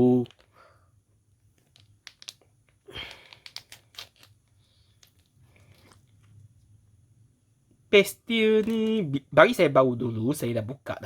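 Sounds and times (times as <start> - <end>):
faint rustling: 0.2 - 6.9.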